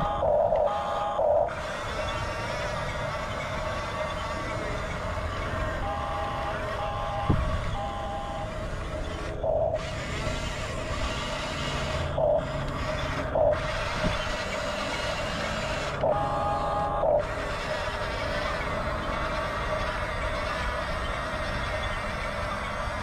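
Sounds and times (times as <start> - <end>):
reversing beep: 0.0 - 10.0, 11.8 - 12.5
toy bulldozer motor whine: 0.0 - 23.0.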